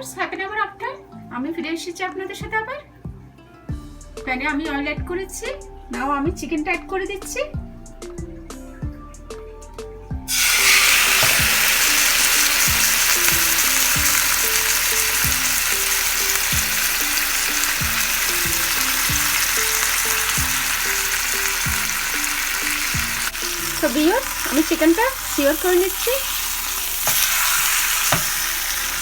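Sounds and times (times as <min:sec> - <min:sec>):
chicken sizzling in hot oil: 0:10.3 - 0:29.0.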